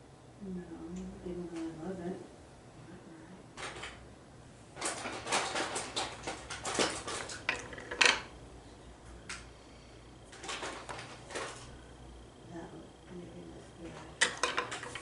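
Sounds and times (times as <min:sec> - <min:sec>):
small hard objects clattering: 0:04.8 - 0:08.3.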